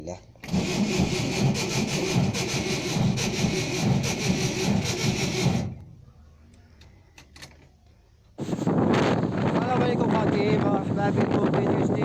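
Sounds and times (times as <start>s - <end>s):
starter motor cranking engine: 0.4s - 5.8s.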